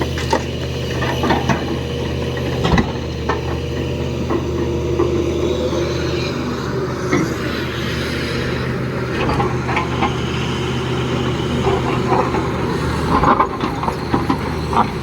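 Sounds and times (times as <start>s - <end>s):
heavy diesel engine running: 0.0s - 15.0s
hydraulic whine: 0.0s - 15.0s.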